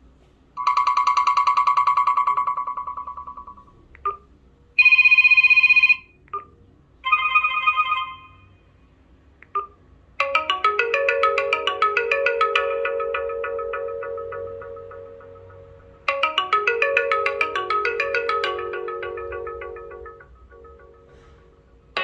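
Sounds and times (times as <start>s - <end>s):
chiming ringtone melody: 0.6s - 4.2s, 7.0s - 8.6s, 10.2s - 22.0s
pulsing electronic ringtone trill: 0.6s - 6.0s, 10.2s - 22.0s.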